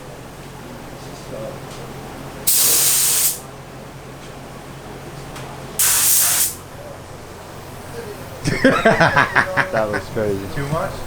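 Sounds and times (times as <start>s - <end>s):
paint spray gun hissing: 2.5s - 3.4s, 5.8s - 6.6s.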